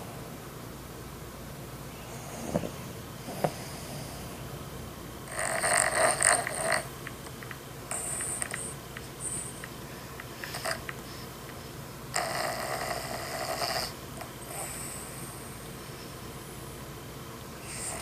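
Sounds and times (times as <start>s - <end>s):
loud rasping snores: 5.3s - 6.9s, 12.1s - 14.9s, 17.6s - 18.0s.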